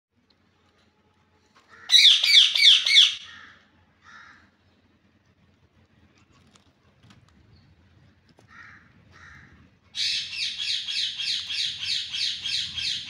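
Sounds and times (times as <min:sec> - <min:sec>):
parrot calling harshly: 0:01.8 - 0:03.5, 0:10.0 - 0:13.0.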